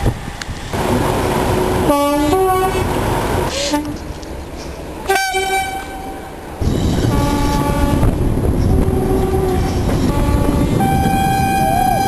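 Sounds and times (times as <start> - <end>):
train passing with rumble and clatter: 0.0 - 12.0
two-tone train horn: 1.8 - 2.8, 5.1 - 6.3, 7.0 - 12.0.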